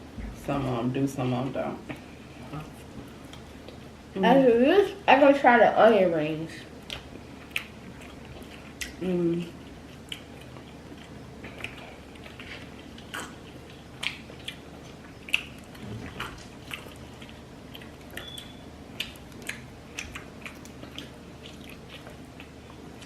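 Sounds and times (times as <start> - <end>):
soft steady background noise: 0.0 - 23.0
chewing and lip-smacking: 1.9 - 3.9, 6.8 - 23.0.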